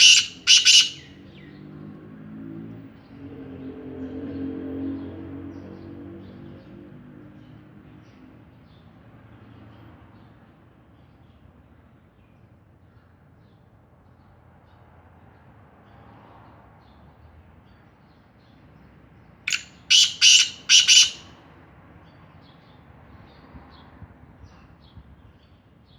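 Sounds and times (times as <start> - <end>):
bird calling harshly: 0.0 - 1.2, 19.5 - 21.3.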